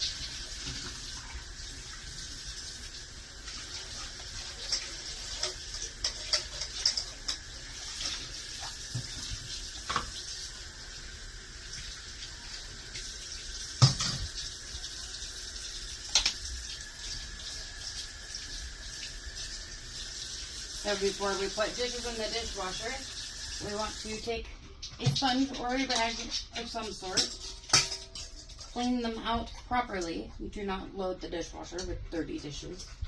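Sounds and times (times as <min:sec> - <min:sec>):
dishes clinking and knocking: 0:04.6 - 0:07.5, 0:13.8 - 0:14.4, 0:25.9 - 0:28.8
tap running into sink: 0:08.8 - 0:10.3, 0:13.8 - 0:14.4.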